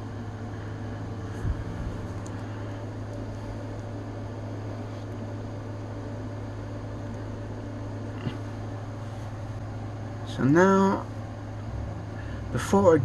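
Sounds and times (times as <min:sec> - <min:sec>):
low hum with faint hiss: 0:00.0 - 0:13.0.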